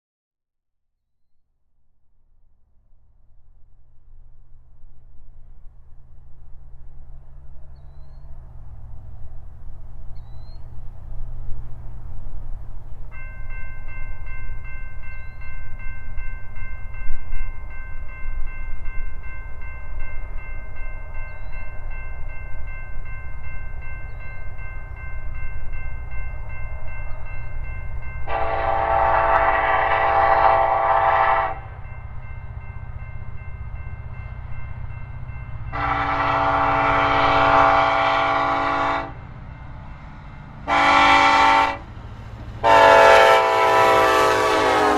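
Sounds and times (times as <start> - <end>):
diesel locomotive rumble: 2.8 - 44.9
train horn blasts: 28.2 - 31.9, 35.7 - 39.2, 40.6 - 41.9, 42.6 - 44.9.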